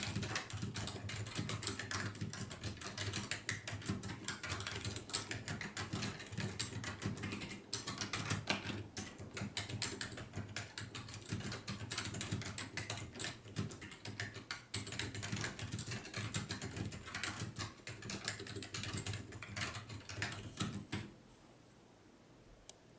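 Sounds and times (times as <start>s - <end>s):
fast typing on keyboard: 0.0s - 21.1s.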